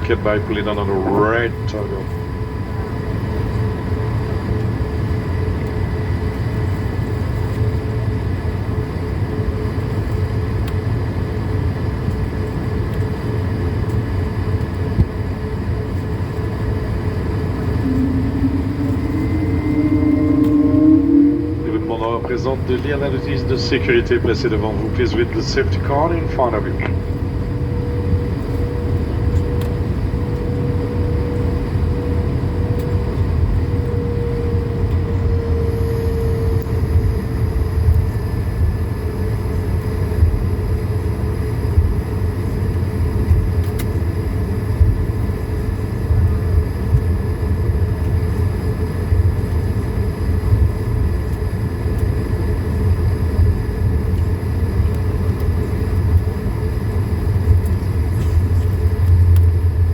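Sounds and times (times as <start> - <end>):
higher whine: 0.0 - 2.4, 16.0 - 38.2
low cabin rumble: 0.0 - 2.5, 16.0 - 37.3, 52.8 - 59.9
jet engine whine: 0.0 - 59.9.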